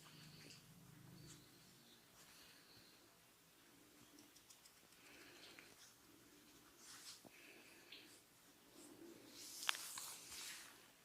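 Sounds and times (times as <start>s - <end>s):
soft rubbing of hands: 5.7s - 7.6s, 8.2s - 11.0s.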